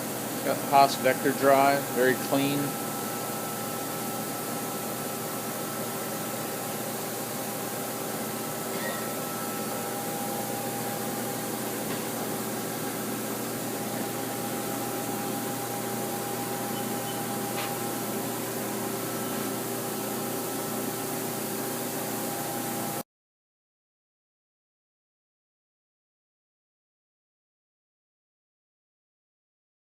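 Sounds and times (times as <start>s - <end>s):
lathe running hum and fan hiss: 0.0s - 23.0s.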